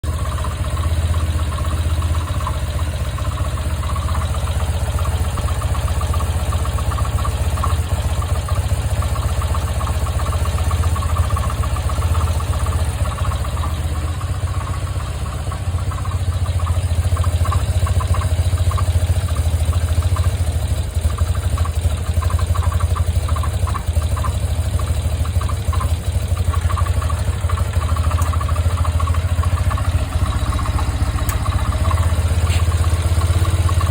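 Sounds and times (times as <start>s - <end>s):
motorcycle engine idling: 0.0s - 33.9s
fast metallic ticking: 0.1s - 33.9s.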